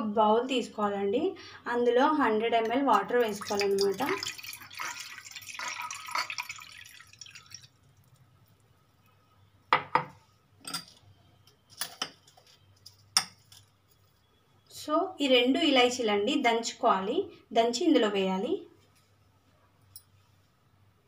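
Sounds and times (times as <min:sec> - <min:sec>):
water poured into a bowl: 0:03.0 - 0:08.2.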